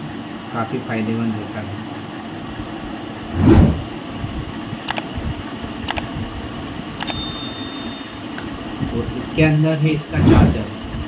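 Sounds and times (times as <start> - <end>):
sharp clicks: 4.9 - 5.1, 5.9 - 6.1.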